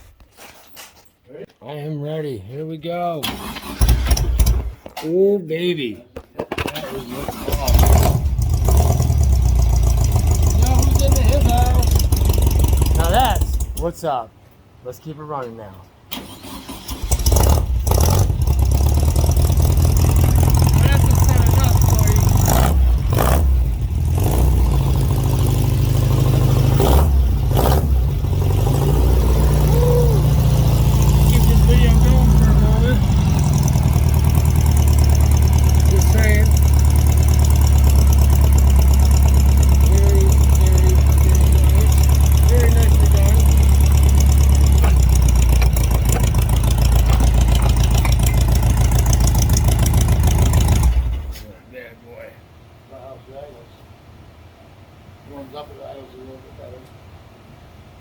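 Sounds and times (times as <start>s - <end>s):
engine running: 3.2s - 4.8s, 6.8s - 14.0s, 16.1s - 51.4s.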